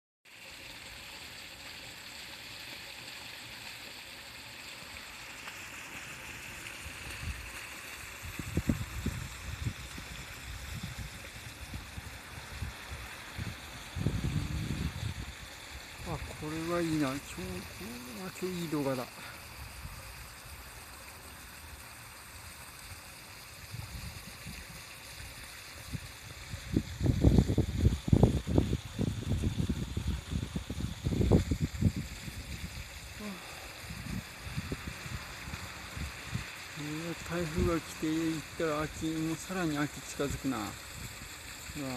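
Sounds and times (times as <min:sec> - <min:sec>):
steady outdoor hiss: 0:00.3 - 0:41.9
wind buffeting microphone: 0:08.1 - 0:16.5, 0:25.8 - 0:33.0, 0:33.8 - 0:36.5.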